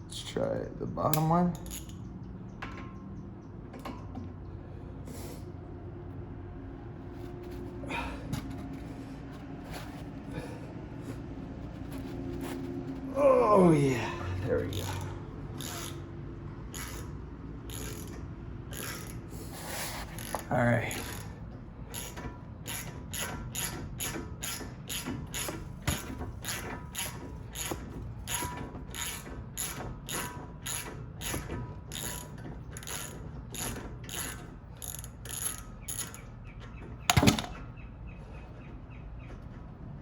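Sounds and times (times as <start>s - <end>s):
ratchet wrench clicking: 1.1s - 2.1s, 14.6s - 16.0s, 16.7s - 19.4s, 20.0s - 36.2s.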